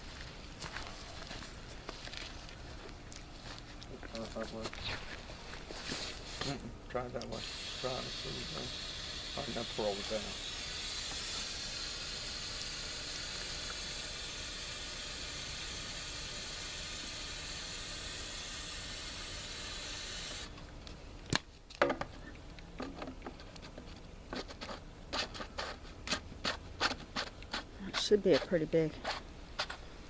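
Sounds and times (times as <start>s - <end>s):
aerosol spray hissing: 7.3s - 20.5s.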